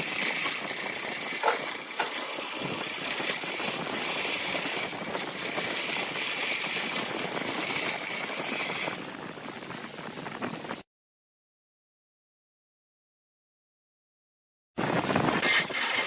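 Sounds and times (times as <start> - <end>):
wood lathe rattling hiss: 0.0 - 9.1, 15.4 - 16.0.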